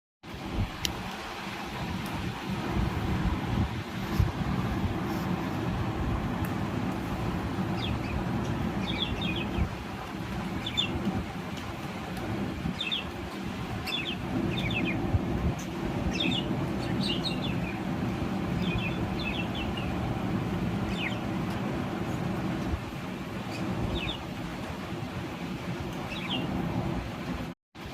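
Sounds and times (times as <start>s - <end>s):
steady low rumble: 0.3s - 27.9s
budgerigars chirping: 7.8s - 9.7s, 10.6s - 11.0s, 13.8s - 15.0s, 15.6s - 17.8s, 18.6s - 20.0s, 20.9s - 21.2s, 26.1s - 26.5s.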